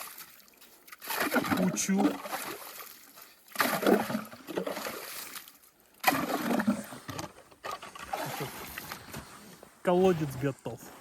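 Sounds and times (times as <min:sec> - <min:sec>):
ice chips and water sloshing: 0:00.0 - 0:10.5.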